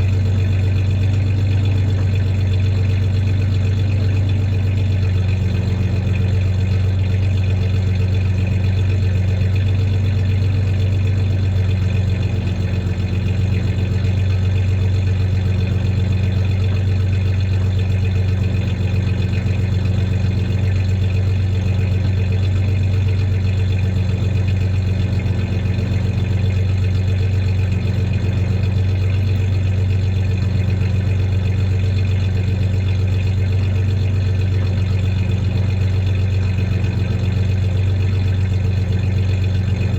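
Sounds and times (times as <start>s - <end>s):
engine idling with misfire: 0.0s - 39.9s.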